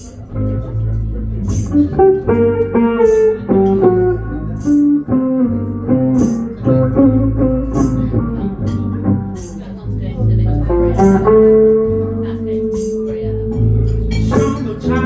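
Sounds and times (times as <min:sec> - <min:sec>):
bass guitar: 0:00.0 - 0:15.0
lead guitar solo: 0:00.0 - 0:15.0
drums: 0:01.4 - 0:03.4, 0:13.7 - 0:15.0.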